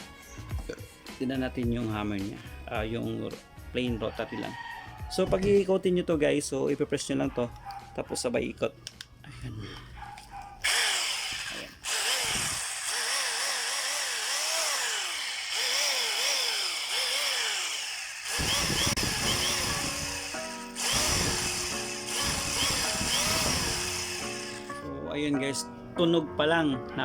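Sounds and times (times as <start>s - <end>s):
background music: 0.0s - 9.8s, 19.0s - 27.0s
rotary hammer drill whirring: 10.6s - 24.9s.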